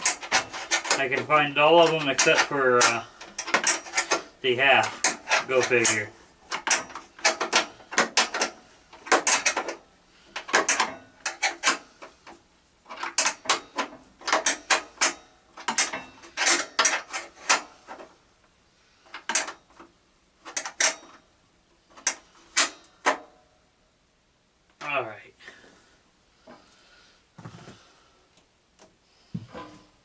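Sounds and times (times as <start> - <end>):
metal hand tools clattering: 0.0 - 11.9, 12.9 - 18.1.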